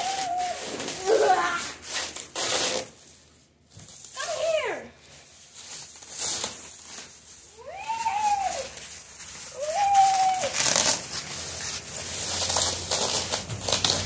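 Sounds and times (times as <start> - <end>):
packaging crinkling and rustling: 0.0 - 14.0.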